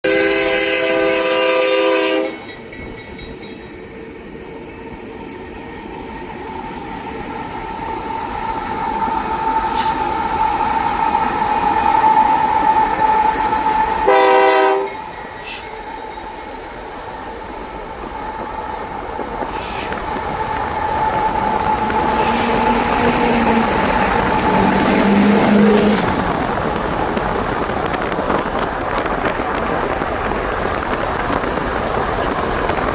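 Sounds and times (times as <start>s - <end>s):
locomotive air horn: 0.0s - 2.4s, 13.9s - 15.0s, 24.9s - 26.1s
train rolling: 0.0s - 32.9s
high ringing tone: 13.8s - 17.3s.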